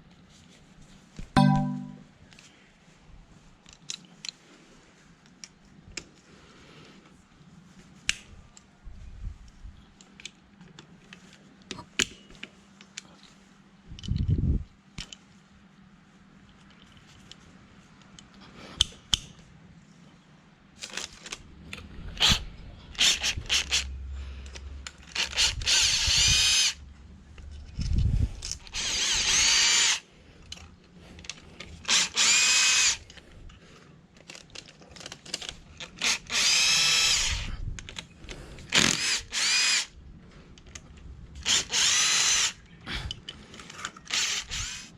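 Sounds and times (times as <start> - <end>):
electric drill whining: 25.2 - 26.8, 28.7 - 30.0, 31.9 - 33.0, 36.0 - 37.5, 38.8 - 39.9, 41.4 - 42.6, 44.1 - 44.9.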